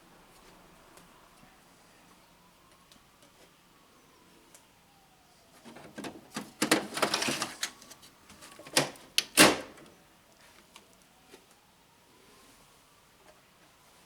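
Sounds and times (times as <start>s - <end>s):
printer cartridge scraping: 5.7s - 9.6s.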